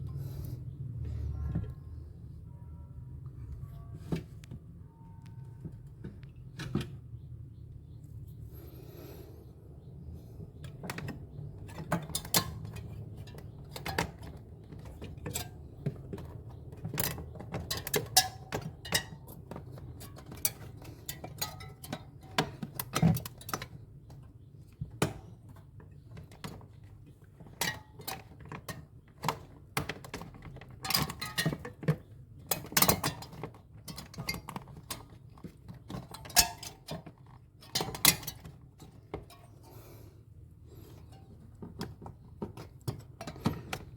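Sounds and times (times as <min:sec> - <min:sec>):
tools and small parts clattering: 0:10.2 - 0:43.9.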